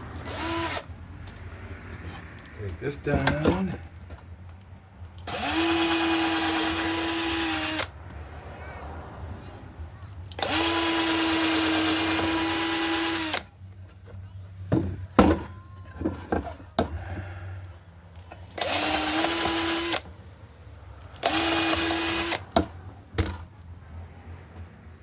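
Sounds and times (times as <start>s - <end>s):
power drill into wood: 0.2s - 0.9s, 5.2s - 8.0s, 10.3s - 13.5s, 18.5s - 20.1s, 21.2s - 22.6s
boards and tools knocking: 14.7s - 17.3s.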